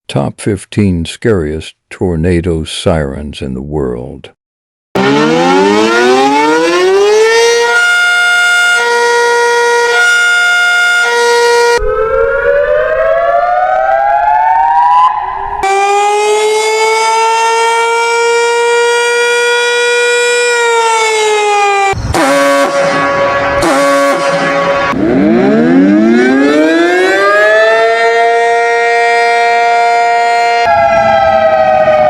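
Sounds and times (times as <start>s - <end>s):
tornado warning sirens: 5.0s - 32.0s.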